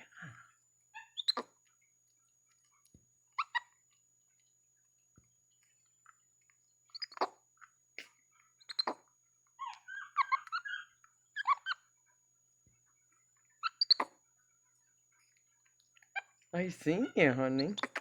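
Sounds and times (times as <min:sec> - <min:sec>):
monkey squeaky chirps: 0:01.0 - 0:01.6, 0:03.3 - 0:03.8, 0:06.9 - 0:07.4, 0:08.0 - 0:11.9, 0:13.6 - 0:14.2, 0:17.6 - 0:18.0.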